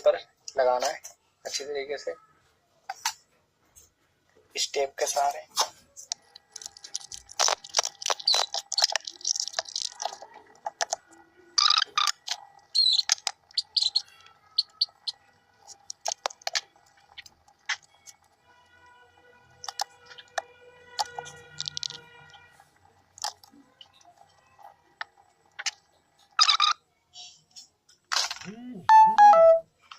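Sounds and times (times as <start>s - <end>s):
adhesive tape ripping: 6.5s - 10.2s.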